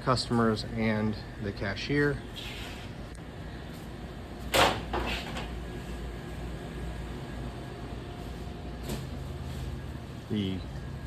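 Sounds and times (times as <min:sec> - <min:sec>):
machinery humming: 0:05.5 - 0:11.0.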